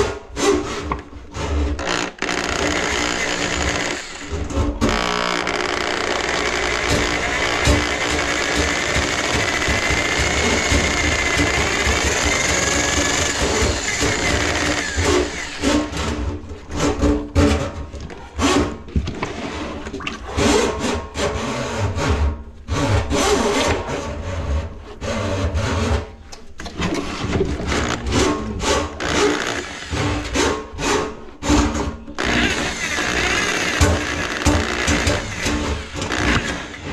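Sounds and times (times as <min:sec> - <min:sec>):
power tool electric motor: 0:01.8 - 0:15.6.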